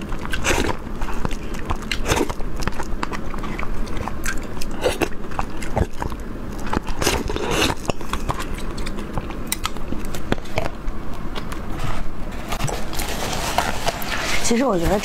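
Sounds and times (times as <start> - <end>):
biting and chewing food: 0.0 - 15.0
wet mouth clicks: 0.2 - 10.7.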